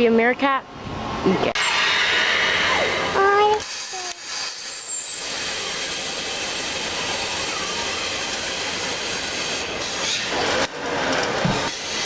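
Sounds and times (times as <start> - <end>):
steady rushing hiss: 1.6 - 10.4.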